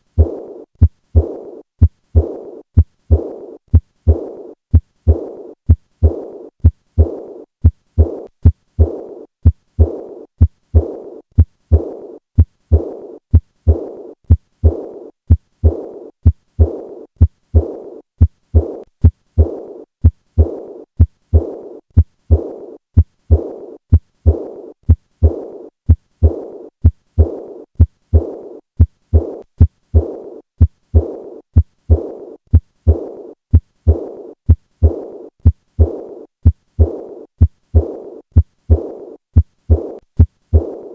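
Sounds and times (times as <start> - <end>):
heartbeat thuds: 0.0 - 40.9
heart murmur: 0.1 - 40.9.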